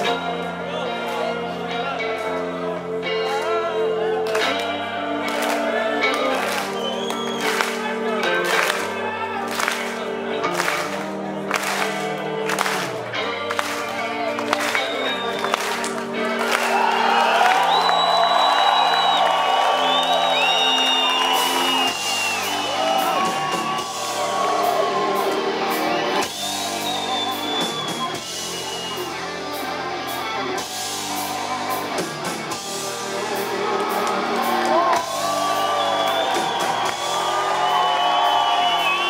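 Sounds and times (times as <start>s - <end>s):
distorted guitars: 0.0s - 39.0s
crowd whooping: 5.2s - 9.9s, 14.0s - 29.6s, 33.0s - 39.0s
drums and cymbals: 17.8s - 39.0s.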